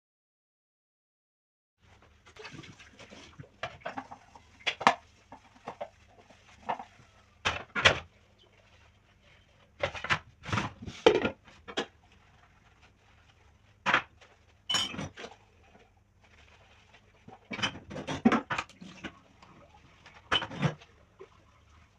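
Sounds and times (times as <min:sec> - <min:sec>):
dishes and cutlery clinking: 0:14.7 - 0:15.4, 0:20.3 - 0:20.8.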